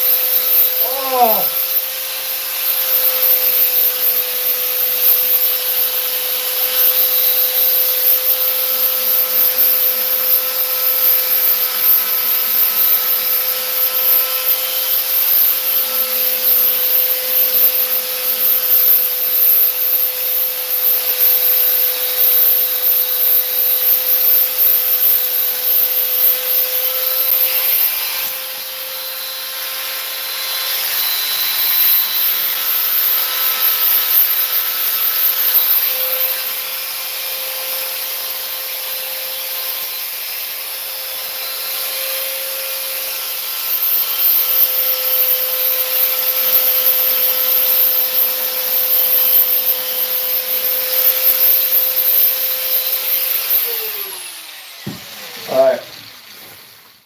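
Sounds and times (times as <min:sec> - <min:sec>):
power sander whining and rasping: 0:00.0 - 0:57.0.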